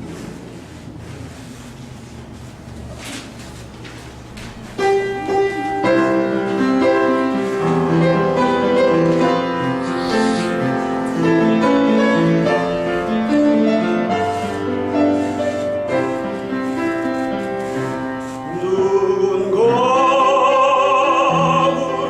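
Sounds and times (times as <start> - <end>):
slow piano melody: 4.6 - 22.0.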